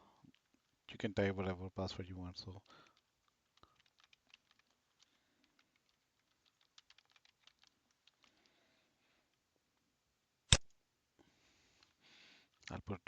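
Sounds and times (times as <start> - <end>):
faint keyboard typing: 1.9 - 9.4.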